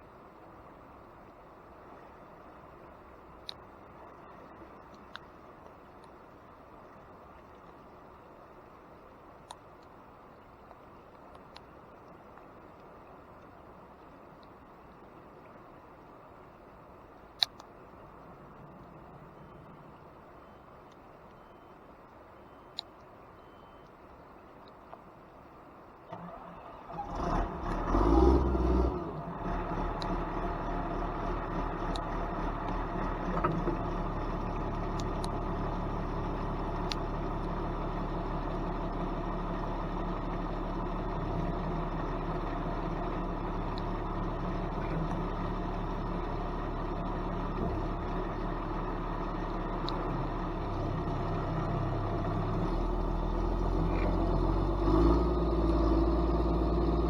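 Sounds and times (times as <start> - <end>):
diesel engine idling: 26.1 - 57.0.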